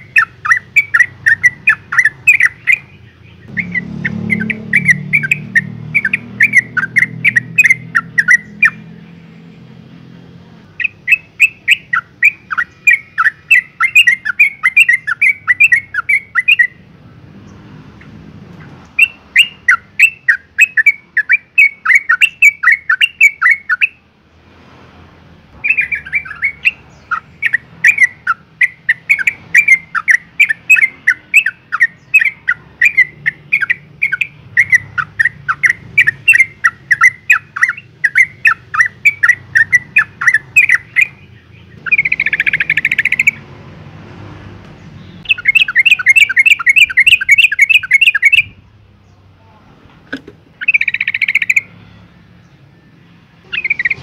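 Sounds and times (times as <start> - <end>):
bird chattering call notes: 0.0 - 8.9, 10.8 - 16.8, 18.6 - 24.0, 25.6 - 43.4, 45.0 - 48.6, 50.1 - 51.8, 53.4 - 54.0
harsh buzzy bird call: 0.0 - 9.1, 10.8 - 16.9, 25.6 - 43.5, 45.0 - 48.6, 53.5 - 54.0.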